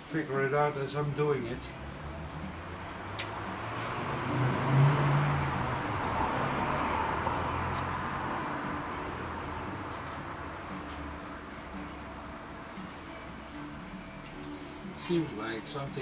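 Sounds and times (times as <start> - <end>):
vehicle passing by: 1.2 - 13.7.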